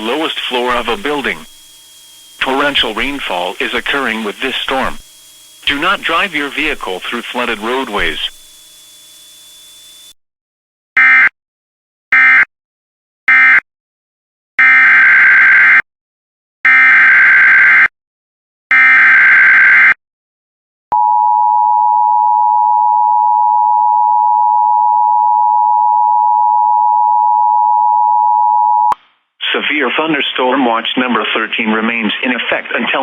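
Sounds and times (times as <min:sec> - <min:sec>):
buzzing digital data bursts: 0:00.0 - 0:10.1
steady loud attention tone: 0:00.0 - 0:10.1.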